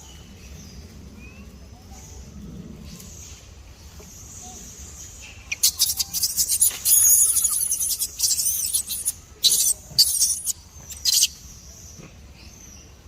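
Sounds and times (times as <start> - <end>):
baby monkey squealing: 5.5 - 11.4.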